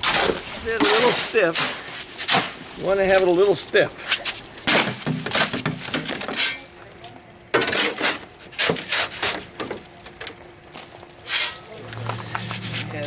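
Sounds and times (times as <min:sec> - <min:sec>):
metal tool scraping concrete: 0:11.3 - 0:13.0.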